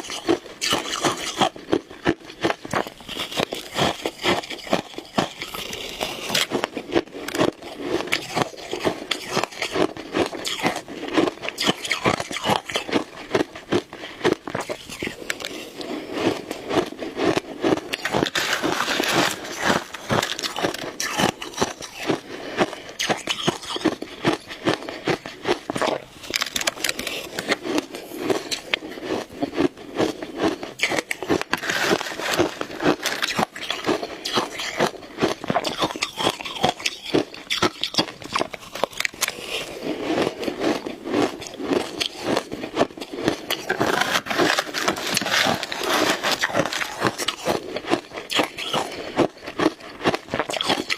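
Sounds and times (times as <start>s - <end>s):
ice being chewed: 0.0s - 50.9s.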